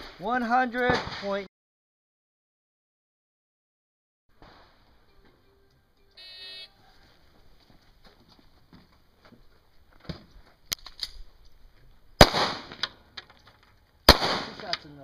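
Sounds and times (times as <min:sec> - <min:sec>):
sharp gunshots: 0:00.8 - 0:01.4, 0:12.2 - 0:12.9, 0:14.1 - 0:14.8.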